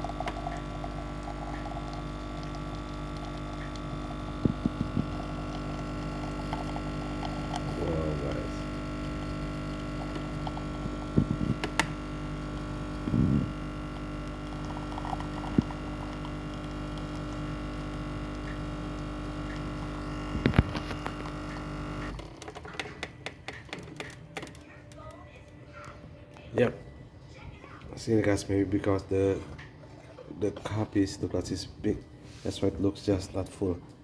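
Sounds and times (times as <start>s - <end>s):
coffee machine humming: 0.0s - 24.6s.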